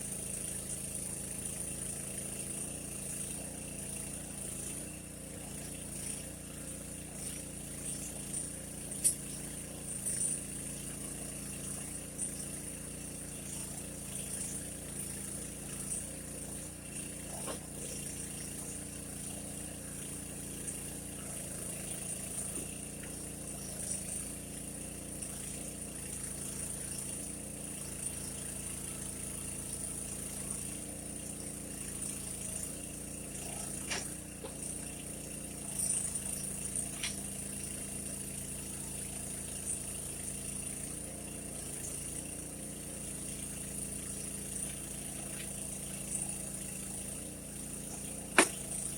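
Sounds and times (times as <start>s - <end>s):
small engine running: 0.0s - 48.9s
brief clicks and knocks: 48.4s - 48.6s.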